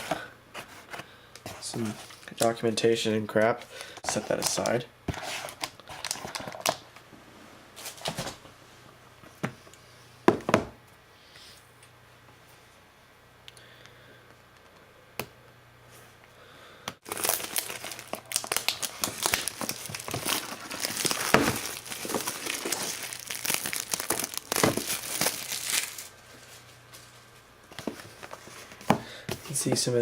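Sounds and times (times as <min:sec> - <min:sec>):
packaging crinkling and tearing: 0:03.8 - 0:06.8, 0:17.0 - 0:27.2.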